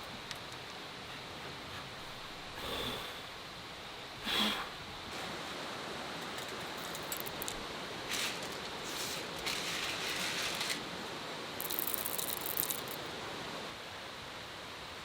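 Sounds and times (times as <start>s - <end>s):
steady hiss: 0.0s - 15.0s
small hard objects rattling: 6.5s - 10.9s, 11.6s - 13.0s.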